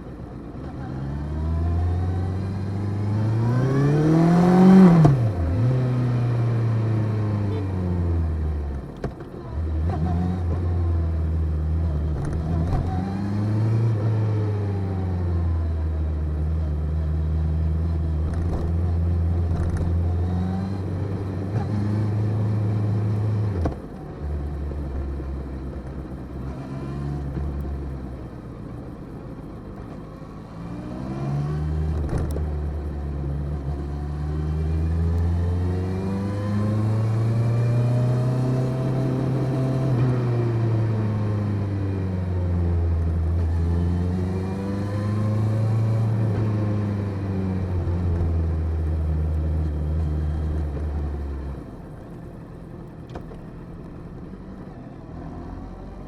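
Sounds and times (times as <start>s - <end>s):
motorcycle engine revving: 0.7s - 8.6s, 30.2s - 52.6s.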